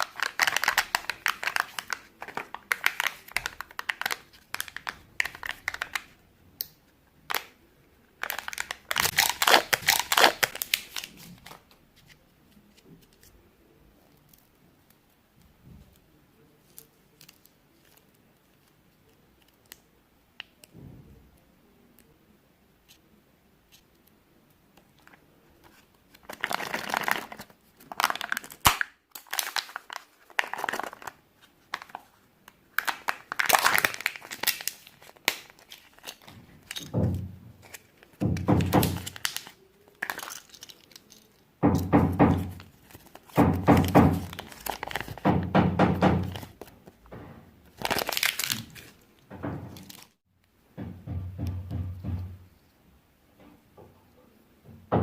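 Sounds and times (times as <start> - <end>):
foil wrappers crinkling and tearing: 0.0 - 6.2, 8.2 - 11.6, 25.6 - 36.9, 37.6 - 41.4, 42.4 - 45.2, 47.7 - 49.0
plastic capsules cracking and knocking: 0.0 - 7.6, 8.2 - 11.7, 25.0 - 47.0, 47.6 - 49.0.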